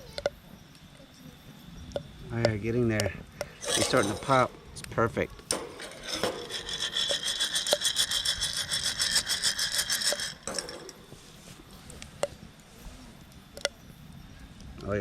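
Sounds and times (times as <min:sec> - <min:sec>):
coffee beans rattling in roaster: 0:02.7 - 0:11.8.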